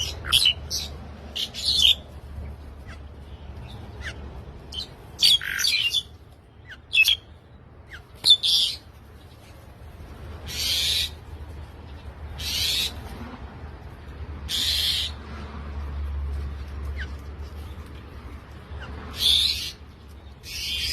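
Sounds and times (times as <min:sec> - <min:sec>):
bird sharp chirps: 0:03.6 - 0:07.3
bird harsh hissing calls: 0:10.5 - 0:11.2, 0:12.4 - 0:13.0, 0:14.5 - 0:15.2.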